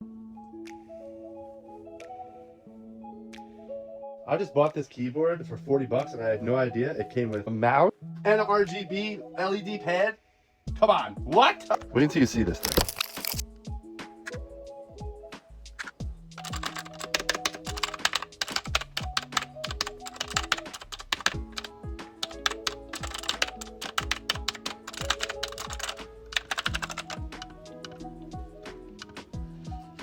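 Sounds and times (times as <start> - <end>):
background music with steady beat: 0.0 - 30.0
fast typing on mechanical keyboard: 12.6 - 13.4, 16.4 - 28.0, 29.0 - 29.2.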